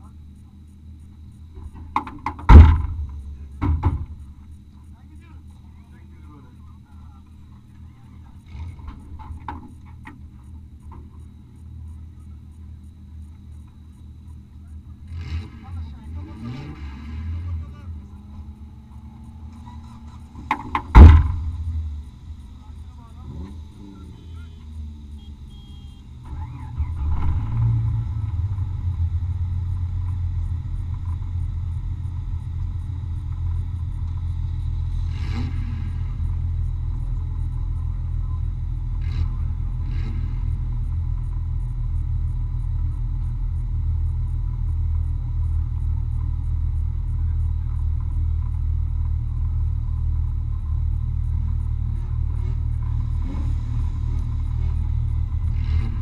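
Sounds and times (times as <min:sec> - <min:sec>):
off-road vehicle engine rumble: 0:00.0 - 0:56.0.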